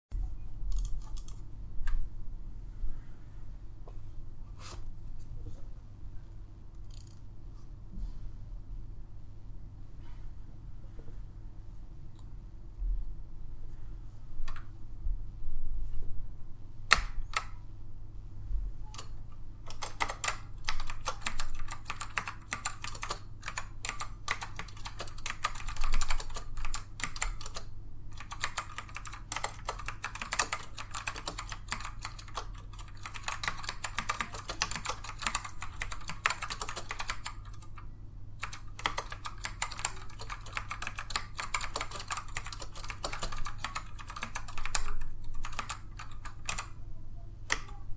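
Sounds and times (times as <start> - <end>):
keyboard typing: 0.7 - 1.4, 18.8 - 46.8.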